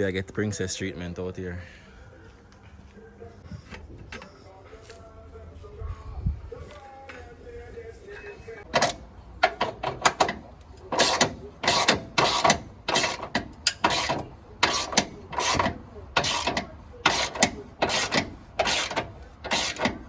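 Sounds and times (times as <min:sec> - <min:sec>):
hand tool rasping and clicking: 0:08.7 - 0:20.0.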